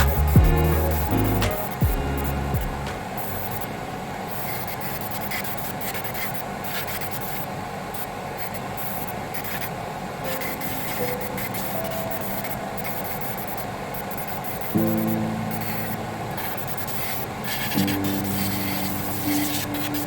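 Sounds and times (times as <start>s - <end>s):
soft background music: 0.0s - 3.8s, 10.2s - 20.0s
rubbing strokes: 14.5s - 20.0s.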